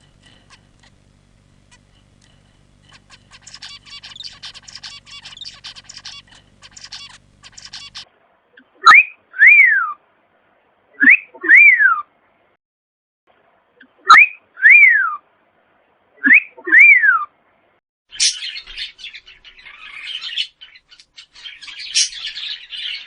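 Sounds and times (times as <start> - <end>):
bird chattering in high twitters: 2.8 - 8.1, 18.1 - 23.0.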